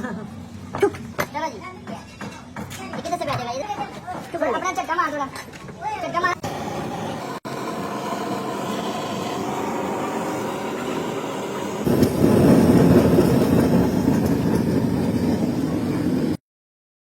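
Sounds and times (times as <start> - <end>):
heavy engine running: 6.5 - 16.4.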